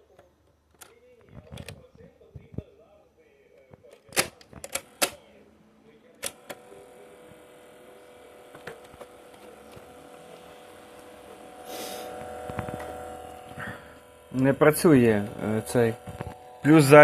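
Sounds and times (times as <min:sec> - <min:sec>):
steady hum of fixed tones: 0:04.7 - 0:17.0
audio player clicks: 0:08.5 - 0:09.9
short hiss: 0:11.7 - 0:12.2.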